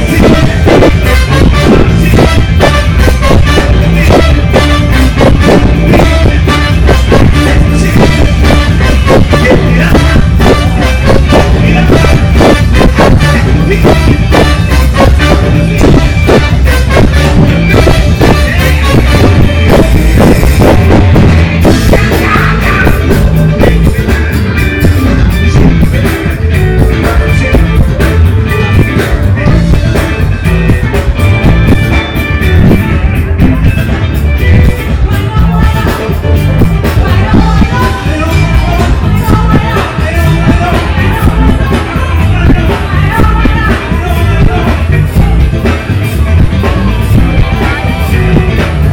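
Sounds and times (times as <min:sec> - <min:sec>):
heavy bass: 0:00.0 - 0:48.9
live funk band playing: 0:00.0 - 0:48.9
steady drum beat: 0:00.0 - 0:48.9.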